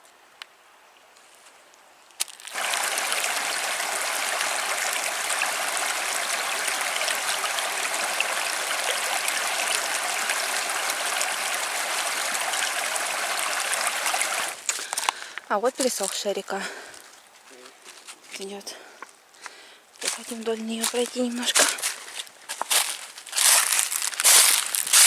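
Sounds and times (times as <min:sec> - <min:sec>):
river water rushing: 0:02.4 - 0:15.1.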